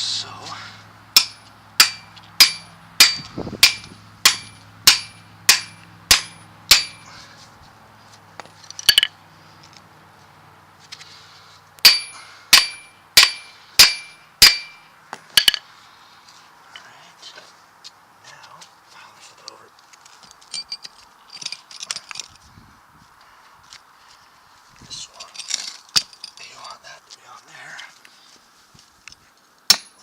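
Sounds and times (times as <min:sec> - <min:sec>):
hammer striking metal: 0:01.2 - 0:07.1, 0:11.8 - 0:15.6, 0:29.7 - 0:30.0.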